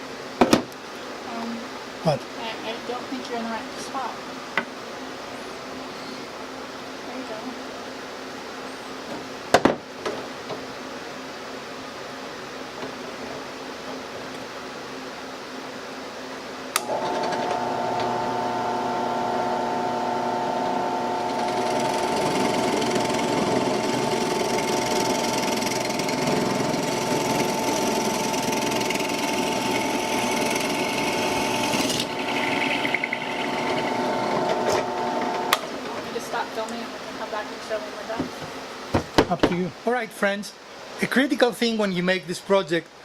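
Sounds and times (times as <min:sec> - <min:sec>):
motor switch click: 0:16.8 - 0:18.2, 0:34.4 - 0:35.7
drill bit grinding wood: 0:16.8 - 0:35.7
drill press motor humming: 0:16.8 - 0:35.9.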